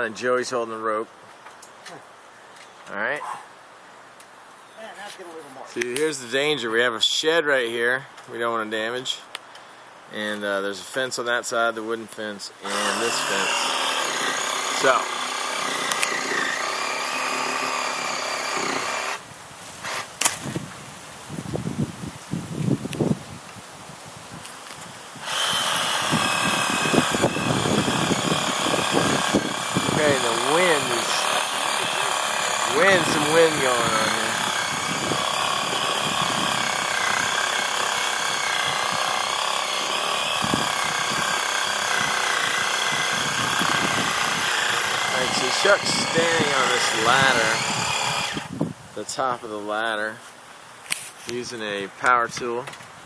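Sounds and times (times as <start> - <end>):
reciprocating saw cutting wood: 12.6 - 19.2, 19.8 - 20.6, 25.2 - 48.6.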